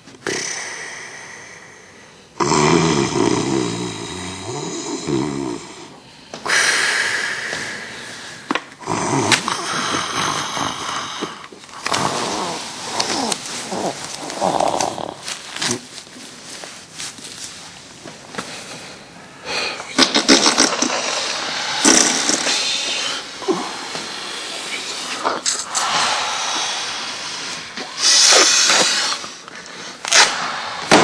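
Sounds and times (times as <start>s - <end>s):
person snoring loudly: 2.4s - 6.0s, 8.8s - 15.4s, 20.0s - 29.4s.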